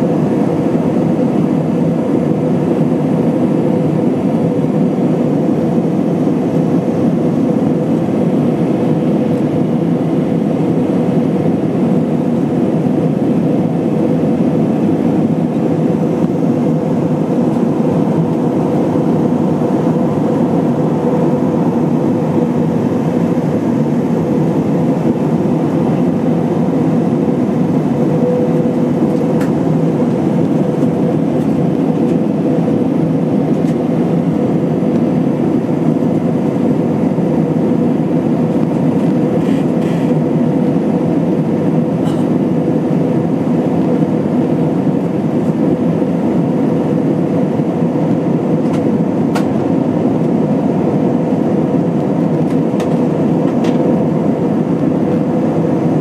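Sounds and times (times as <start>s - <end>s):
cabin airflow and engine rush: 0.0s - 56.0s
steady hum: 0.0s - 56.0s.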